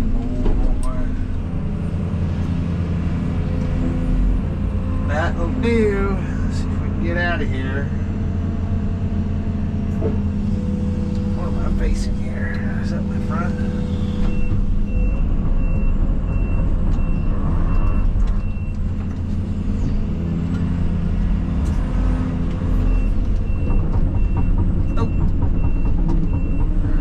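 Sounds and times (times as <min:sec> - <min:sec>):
excavator diesel engine under load: 0:00.0 - 0:27.0
knocks and clanks: 0:00.1 - 0:01.8, 0:21.5 - 0:27.0
travel alarm beeping: 0:14.3 - 0:18.8, 0:22.8 - 0:27.0.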